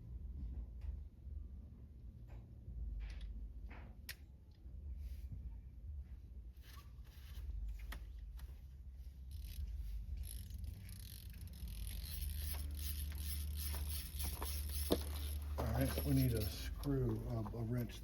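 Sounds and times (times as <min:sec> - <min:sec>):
low steady rumble: 0:00.0 - 0:18.0
metal parts clicking and scraping: 0:09.3 - 0:17.5.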